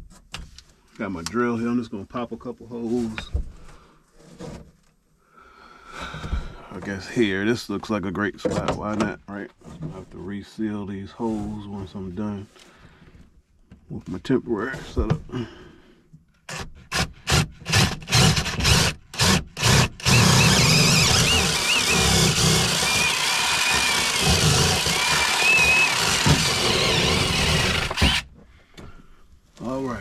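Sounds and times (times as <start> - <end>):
power drill drilling: 16.5 - 28.3.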